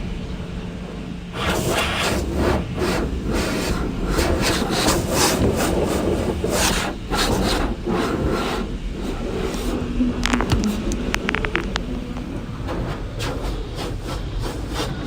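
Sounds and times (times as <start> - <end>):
steady low rumble: 0.0 - 15.0
car wash brushes swishing: 1.4 - 10.0, 12.0 - 15.0
sharp clicks: 10.2 - 12.3.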